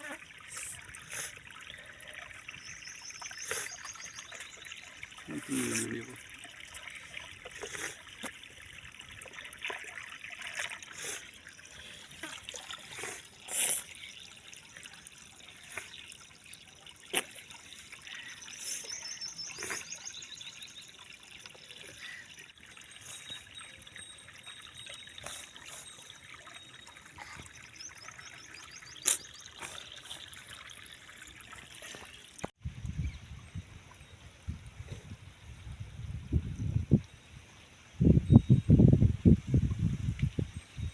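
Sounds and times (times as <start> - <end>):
stream trickling over stones: 0.0 - 37.4.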